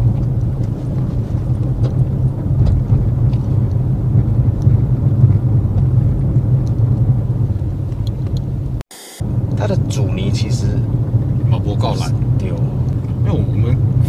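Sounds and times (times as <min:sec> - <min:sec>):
faint suspension ticks: 0:00.0 - 0:08.5
engine and tyre drone: 0:00.0 - 0:14.0.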